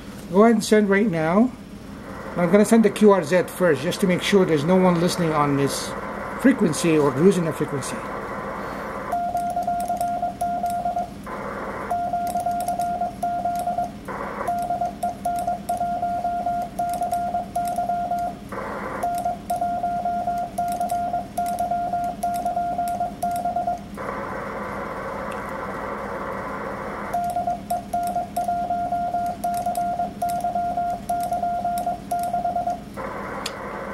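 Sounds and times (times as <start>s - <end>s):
radio receiver hiss: 2.0s - 9.2s, 33.0s - 33.9s
morse code tone: 9.1s - 11.1s, 11.9s - 18.4s, 19.0s - 23.8s, 27.1s - 32.8s.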